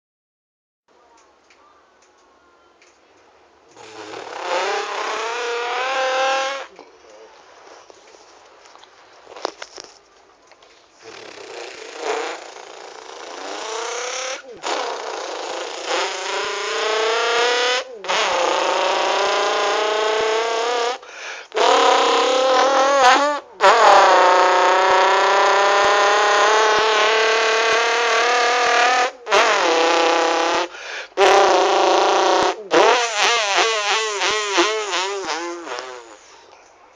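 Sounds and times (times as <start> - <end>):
person imitating car engine: 3.8 - 6.8, 11.0 - 36.2.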